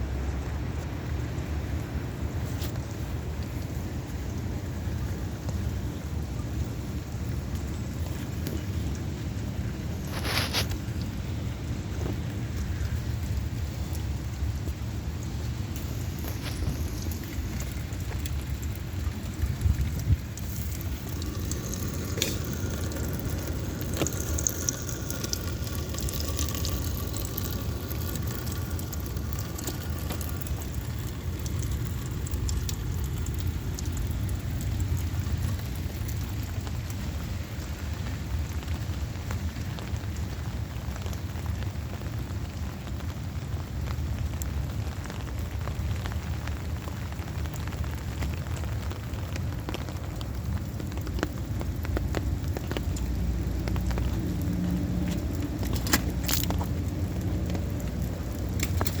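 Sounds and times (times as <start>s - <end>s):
faint steady hum: 0.0s - 41.6s
heavy rain falling: 0.0s - 59.0s
sharp drip ticks: 7.0s - 59.0s.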